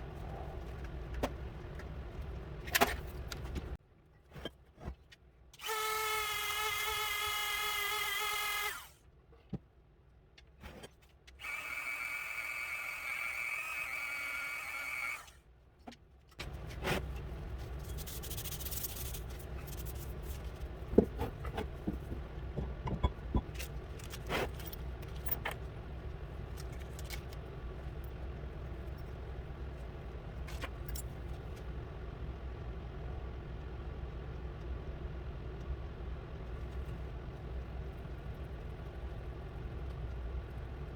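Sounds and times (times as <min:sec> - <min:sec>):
power tool whining: 0:05.6 - 0:09.0, 0:11.4 - 0:15.4
clicks and knocks: 0:21.0 - 0:23.7.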